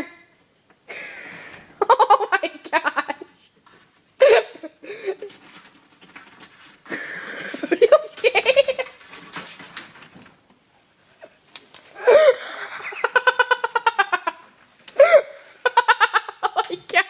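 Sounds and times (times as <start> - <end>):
person laughing: 1.8 - 3.3, 4.2 - 5.3, 6.9 - 9.0, 12.0 - 17.0.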